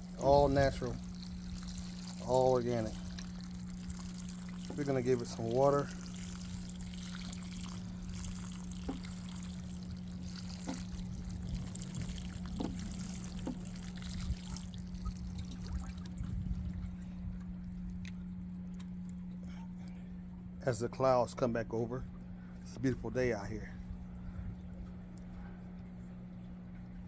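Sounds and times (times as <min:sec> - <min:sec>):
liquid trickling onto soil: 0:00.0 - 0:17.0
steady low hum: 0:00.0 - 0:27.0.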